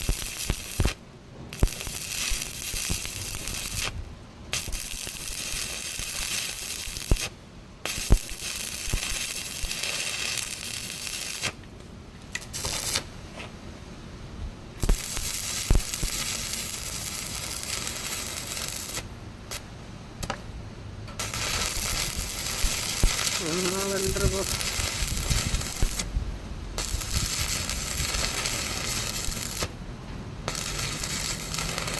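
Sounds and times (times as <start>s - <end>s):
welding arc crackling: 0.0s - 11.7s, 12.3s - 13.1s, 14.8s - 20.4s, 21.1s - 26.2s, 26.8s - 29.8s, 30.4s - 31.9s
sharp clicks and taps: 20.2s - 20.4s.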